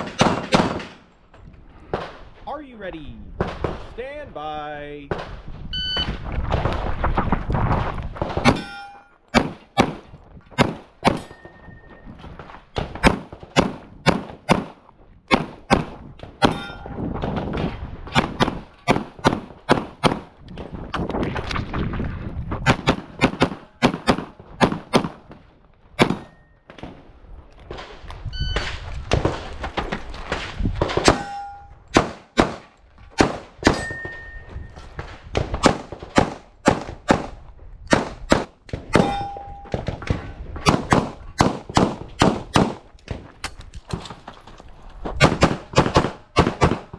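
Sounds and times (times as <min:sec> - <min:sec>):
pistol shots: 0:00.0 - 0:01.0, 0:09.3 - 0:11.4, 0:12.8 - 0:16.8, 0:18.1 - 0:20.3, 0:22.7 - 0:25.4, 0:26.0 - 0:27.0, 0:30.8 - 0:34.3, 0:35.3 - 0:42.8, 0:45.2 - 0:46.9
metallic ringing tones: 0:08.6 - 0:09.3, 0:11.2 - 0:12.0, 0:16.4 - 0:17.0, 0:31.2 - 0:31.9, 0:33.7 - 0:34.8, 0:39.0 - 0:39.8.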